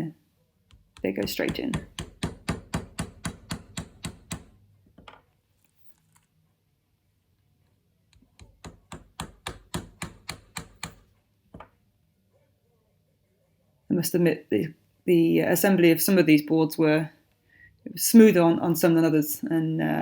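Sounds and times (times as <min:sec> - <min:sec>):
hammering wooden dowels: 0:00.7 - 0:05.2, 0:08.2 - 0:11.7.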